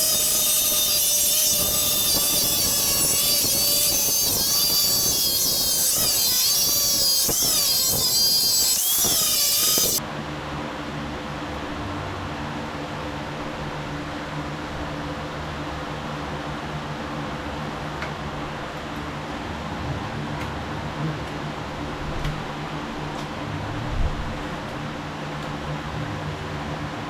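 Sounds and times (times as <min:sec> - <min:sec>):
power tool cutting metal: 0:00.0 - 0:10.0
steady machine hum: 0:00.0 - 0:10.0.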